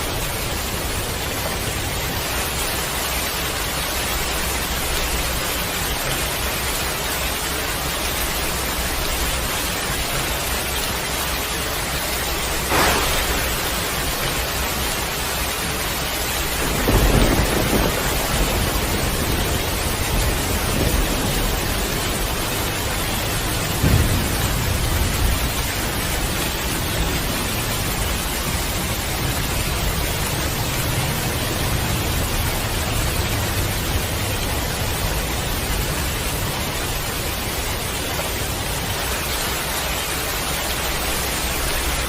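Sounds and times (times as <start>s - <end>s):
heavy rain: 0.0s - 42.0s
low thunder rumbling: 0.0s - 42.0s
sharp crack of thunder: 12.6s - 15.1s, 16.3s - 28.8s.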